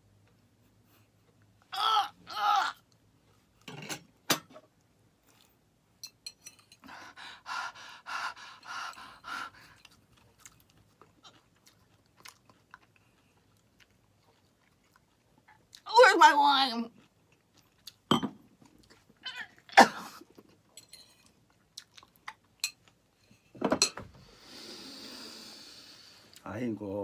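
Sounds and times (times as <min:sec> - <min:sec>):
woman groaning: 0:01.8 - 0:02.8
fast mouth breathing: 0:06.9 - 0:09.9
woman chewing: 0:08.6 - 0:15.8.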